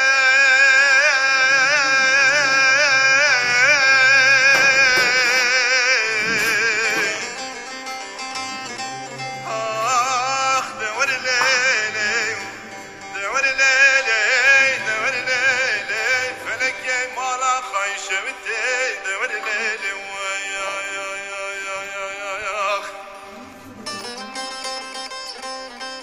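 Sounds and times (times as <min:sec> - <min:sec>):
man singing folk song: 0:00.0 - 0:25.0
plucked string accompaniment: 0:00.0 - 0:26.0.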